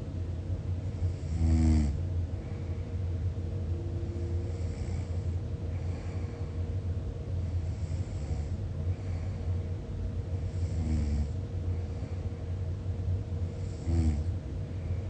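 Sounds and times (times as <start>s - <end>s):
steady low rumble: 0.0s - 15.0s
faint breaths: 0.8s - 15.0s
person snoring: 1.0s - 2.0s, 4.5s - 6.3s, 7.6s - 9.1s, 10.5s - 12.0s, 13.6s - 14.3s.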